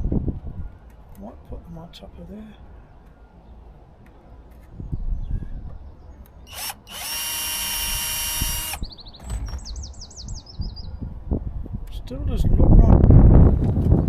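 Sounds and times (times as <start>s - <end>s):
power drill driving a screw: 6.5s - 8.9s.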